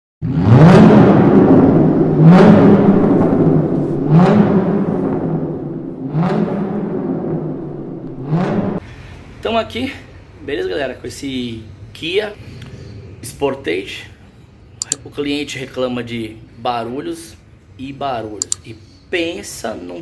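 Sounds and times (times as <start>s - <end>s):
rising boom and swish: 0.6s - 8.8s.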